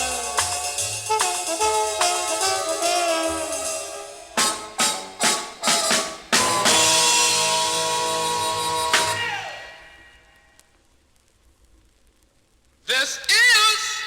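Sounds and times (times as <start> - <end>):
samba rock band music: 0.0 - 10.2
drums: 0.0 - 10.4.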